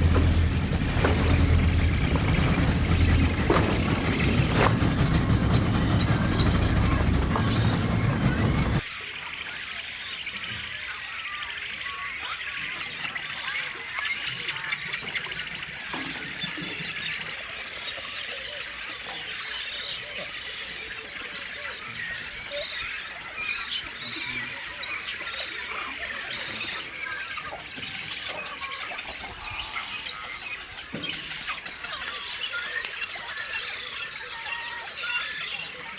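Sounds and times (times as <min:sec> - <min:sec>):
birds chattering: 0:00.0 - 0:35.9.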